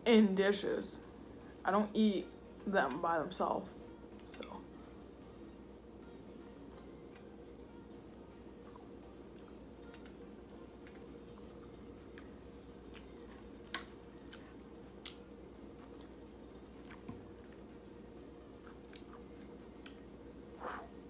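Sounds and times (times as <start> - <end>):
faint steady hum: 0.0 - 21.0
person chewing with wet mouth sounds: 6.6 - 7.7, 8.5 - 17.8, 18.4 - 21.0.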